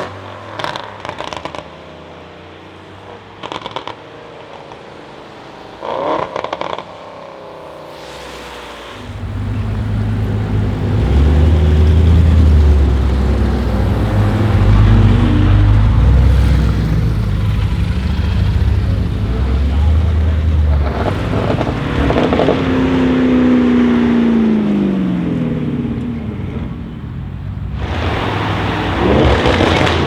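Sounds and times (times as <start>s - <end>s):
exhaust crackles: 6.0s - 30.0s
deep exhaust drone: 8.1s - 30.0s.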